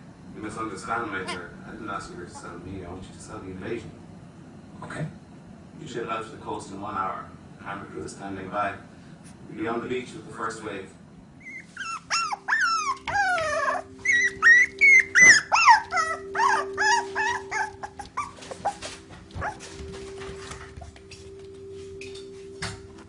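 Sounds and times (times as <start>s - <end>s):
steady low hum: 0.0s - 23.0s
puppy whining and yelping: 11.4s - 19.8s.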